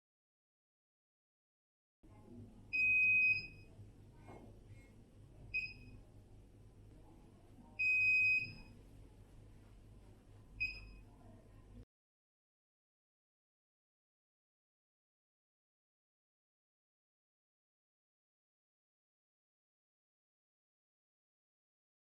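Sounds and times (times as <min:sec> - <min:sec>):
air purifier beeping: 0:02.7 - 0:03.8, 0:05.5 - 0:06.0, 0:07.8 - 0:08.8, 0:10.6 - 0:11.1.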